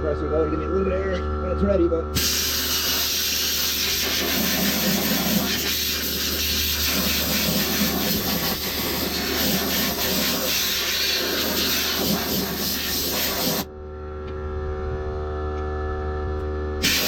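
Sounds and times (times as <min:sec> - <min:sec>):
gas hissing from hose: 0:02.2 - 0:13.7, 0:16.8 - 0:17.0.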